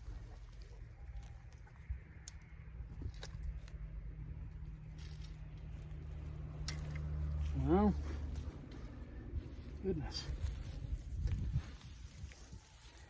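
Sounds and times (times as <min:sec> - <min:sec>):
hands digging in soil: 0:04.9 - 0:13.0.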